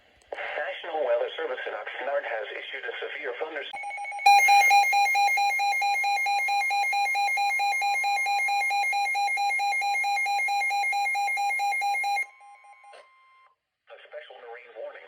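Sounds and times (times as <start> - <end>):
two-pitch electronic alarm beep: 3.8 - 13.5.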